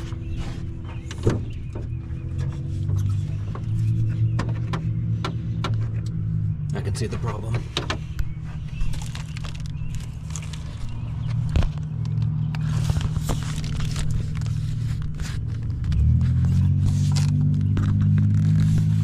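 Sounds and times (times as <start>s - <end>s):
engine low drone: 0.0s - 19.0s
hands handling wiring: 7.0s - 19.0s.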